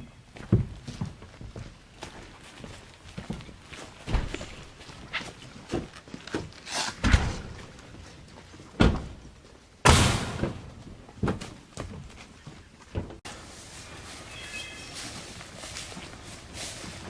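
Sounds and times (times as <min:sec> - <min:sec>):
footsteps: 0:00.3 - 0:17.0
door slamming shut: 0:07.0 - 0:07.6, 0:09.8 - 0:10.7.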